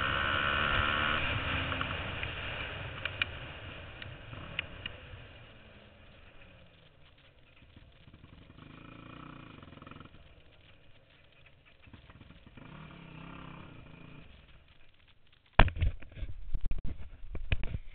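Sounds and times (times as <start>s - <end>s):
faint engine: 0.0s - 16.3s.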